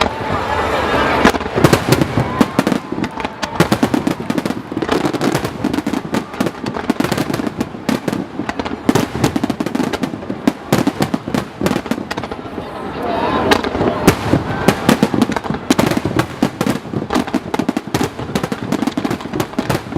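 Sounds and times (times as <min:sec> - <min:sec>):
fireworks bangs and crackles: 0:00.0 - 0:19.9.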